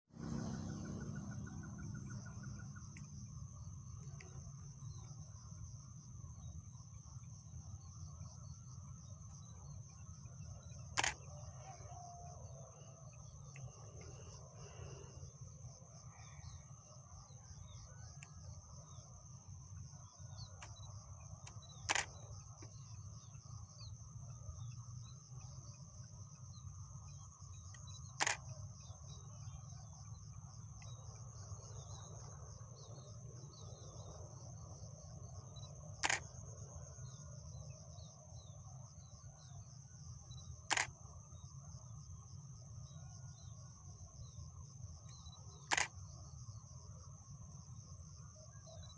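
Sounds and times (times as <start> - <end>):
insects droning in chorus: 0.1 - 48.9
faint bird chirps: 0.2 - 19.1, 48.1 - 48.9
sharp clicks: 11.0 - 11.3, 21.4 - 22.7, 27.7 - 28.5, 36.0 - 36.3, 40.7 - 41.0, 45.6 - 46.0.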